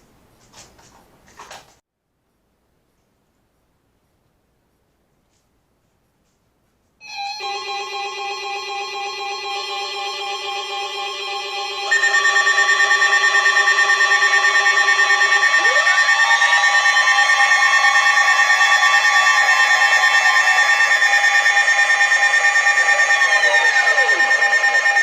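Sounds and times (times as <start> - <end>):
rapidly pulsing sweeping alarm: 7.0 - 25.0
steady alert tones: 7.0 - 25.0.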